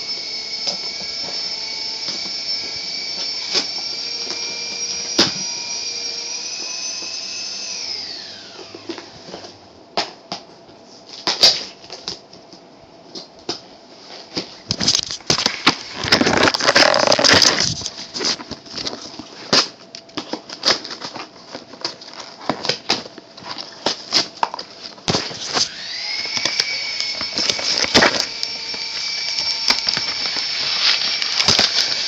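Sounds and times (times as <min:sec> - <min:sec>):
steady high-pitched whine: 0:00.0 - 0:09.8, 0:24.4 - 0:32.0
cardboard and plastic crackling: 0:14.2 - 0:32.0
package tearing: 0:14.7 - 0:24.4, 0:25.1 - 0:32.0.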